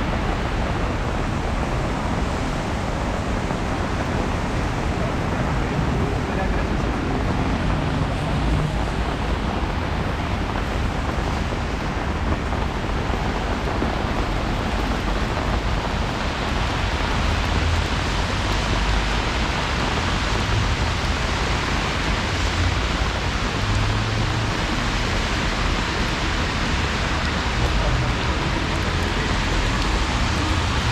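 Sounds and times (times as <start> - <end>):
rain hiss: 0.0 - 30.9
wet-road traffic rumble: 0.0 - 30.9.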